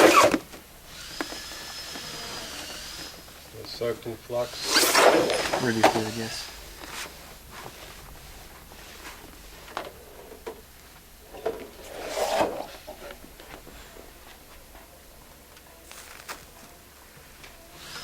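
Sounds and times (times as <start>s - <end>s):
scraping rustle: 1.4s - 10.4s, 11.5s - 14.8s.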